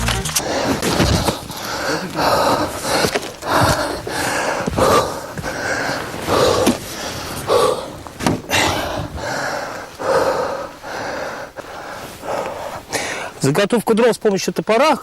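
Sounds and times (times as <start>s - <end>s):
person breathing heavily: 0.3s - 13.4s.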